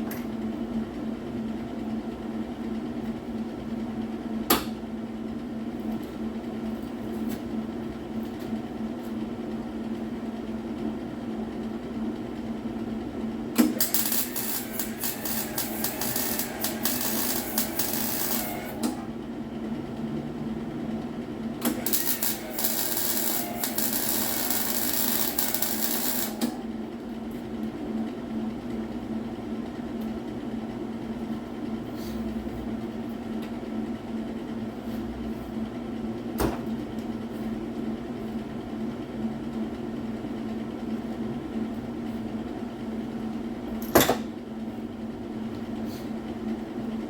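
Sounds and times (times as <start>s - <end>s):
steady hum: 12.1s - 37.7s
welding arc crackling and hissing: 13.6s - 18.9s, 21.7s - 26.5s.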